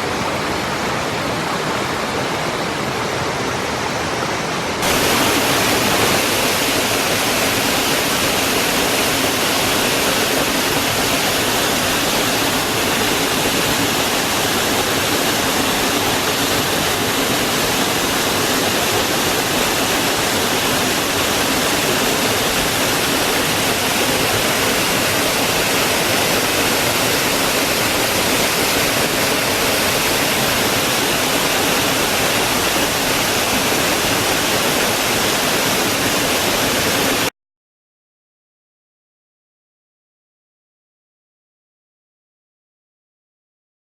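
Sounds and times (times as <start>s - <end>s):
waterfall pouring: 4.8s - 37.3s.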